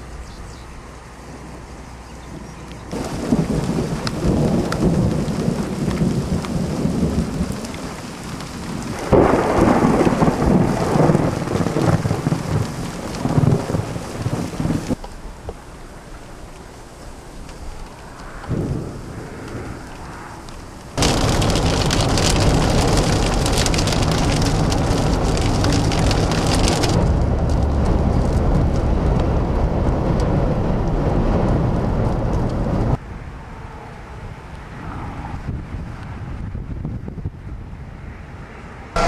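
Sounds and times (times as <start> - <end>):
wind buffeting microphone: 2.1 - 39.0
heavy rain: 2.9 - 33.0.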